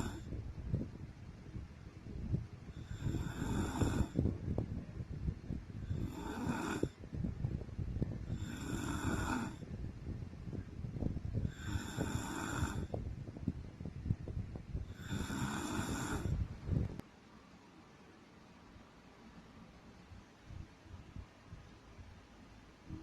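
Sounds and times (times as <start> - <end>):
woman snoring: 0.0 - 0.3, 2.8 - 4.2, 5.8 - 7.0, 8.3 - 9.6, 11.4 - 13.0, 14.8 - 16.4.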